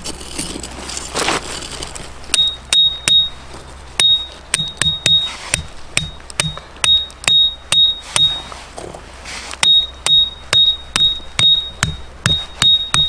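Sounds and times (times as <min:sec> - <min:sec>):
hammer striking metal tent peg: 0:02.3 - 0:03.4, 0:04.0 - 0:08.5, 0:09.6 - 0:13.0.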